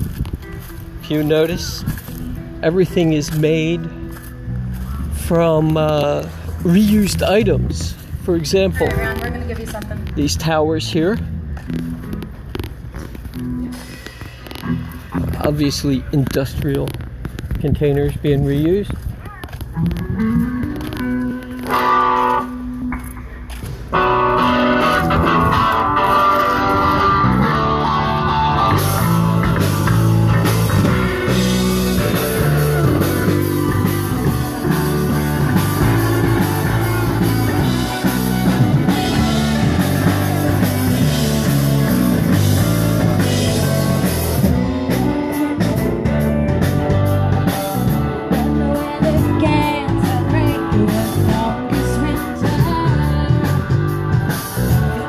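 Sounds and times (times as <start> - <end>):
drum kit: 0.0 - 17.9, 19.6 - 55.0
electric guitar: 0.0 - 18.2, 18.8 - 55.0
person singing: 43.1 - 55.0.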